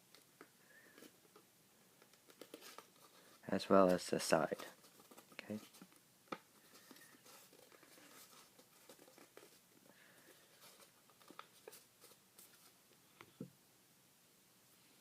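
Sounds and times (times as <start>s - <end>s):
paper rustling being folded: 2.0s - 12.8s.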